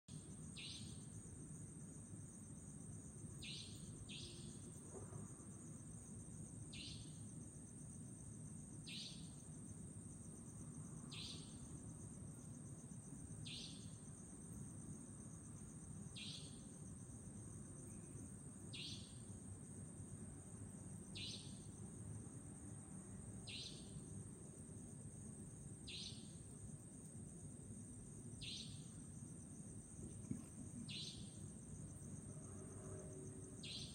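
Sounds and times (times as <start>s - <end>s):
nightjar high-pitched call: 0.5s - 1.1s, 3.4s - 4.7s, 6.7s - 7.2s, 8.8s - 9.4s, 11.1s - 11.7s, 13.4s - 14.0s, 16.1s - 16.7s, 18.7s - 19.3s, 21.1s - 21.8s, 23.4s - 24.1s, 25.8s - 26.5s, 28.4s - 29.0s, 30.8s - 31.5s, 33.6s - 33.9s.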